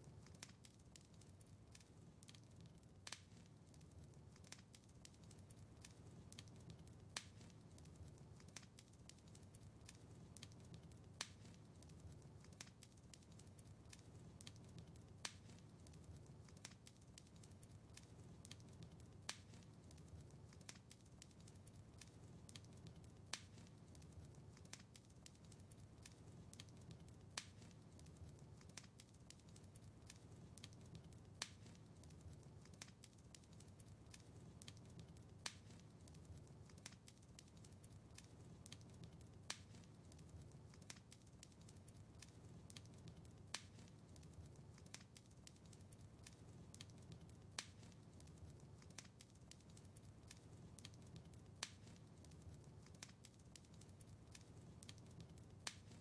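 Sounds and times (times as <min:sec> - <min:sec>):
low rumble of flames: 0:00.0 - 0:56.0
wood fire crackling: 0:00.0 - 0:56.0.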